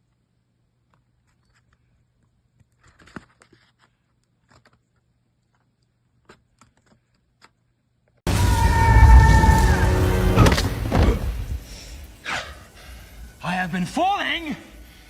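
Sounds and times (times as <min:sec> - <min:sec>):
loud music: 0:08.3 - 0:11.7.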